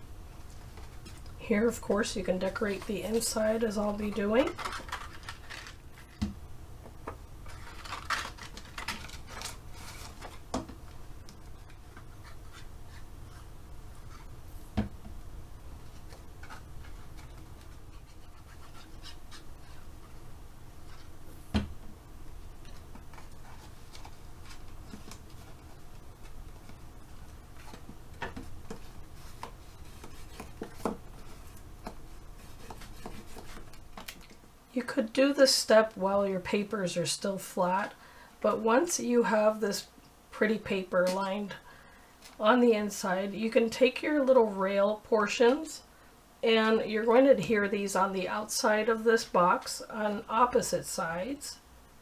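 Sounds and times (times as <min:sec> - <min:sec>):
low steady hum: 0:00.0 - 0:52.0
paper rubbing and rustling: 0:00.4 - 0:06.2, 0:07.4 - 0:10.5, 0:15.8 - 0:21.2, 0:22.7 - 0:34.2.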